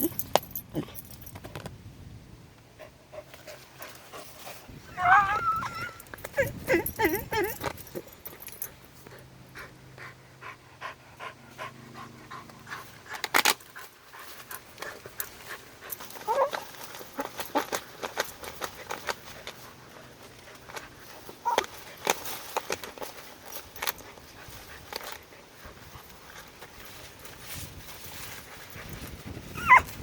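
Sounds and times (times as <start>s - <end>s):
fox breathing and scuffling: 2.9s - 4.9s, 6.1s - 30.0s
fox whining call: 4.9s - 7.6s, 29.5s - 29.9s.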